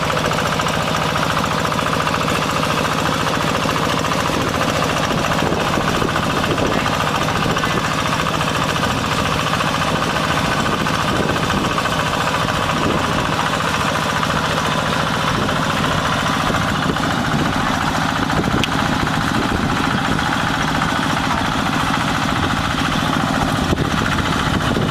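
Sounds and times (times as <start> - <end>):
combine harvester running: 0.0 - 24.9.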